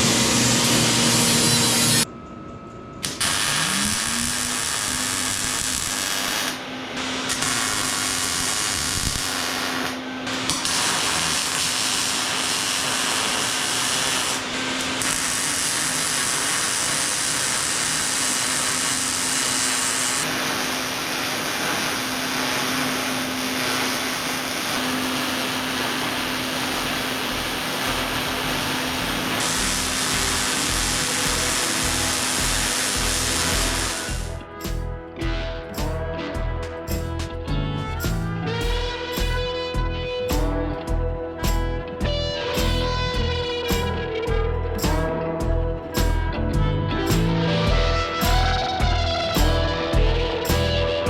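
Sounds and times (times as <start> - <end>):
grinder grinding steel: 0.0 - 2.1, 3.0 - 34.8.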